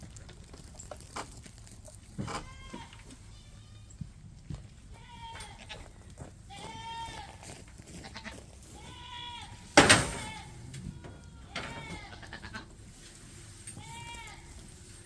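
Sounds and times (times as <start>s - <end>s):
goats bleating: 2.3s - 4.0s, 4.9s - 12.8s, 13.8s - 14.6s.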